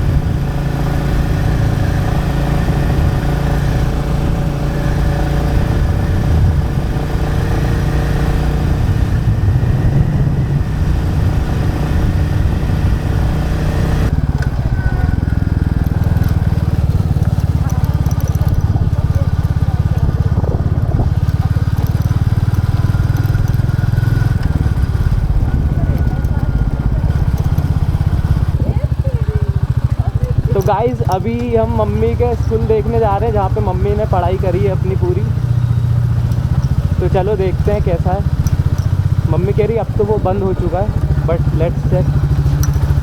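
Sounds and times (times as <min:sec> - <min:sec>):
motorcycle engine running: 0:00.0 - 0:43.0.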